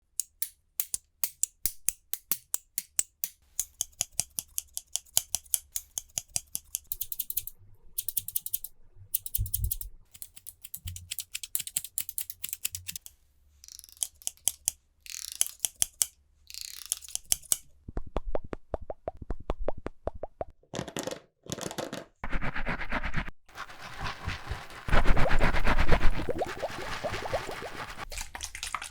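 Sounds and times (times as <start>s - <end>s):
scissors snipping hair: 3.6s - 13.1s, 13.7s - 17.7s
hiss-like swishes: 23.5s - 28.0s.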